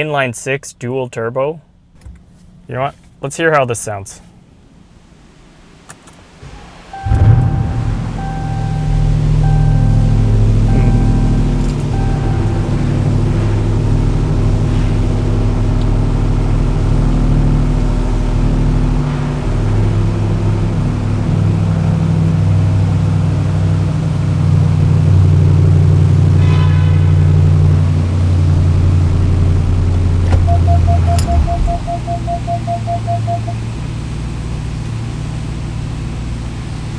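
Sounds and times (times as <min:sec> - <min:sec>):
engine idling: 0:06.4 - 0:36.9.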